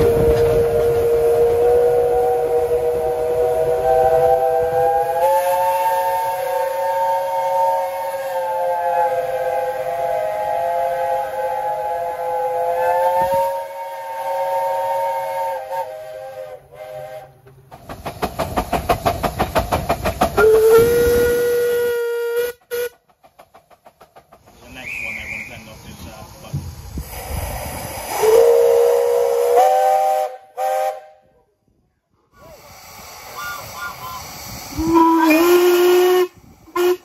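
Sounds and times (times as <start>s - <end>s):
chime steam whistle: 0.0s - 17.3s, 33.4s - 37.0s
steam locomotive chuffing: 0.0s - 31.2s, 32.4s - 37.0s.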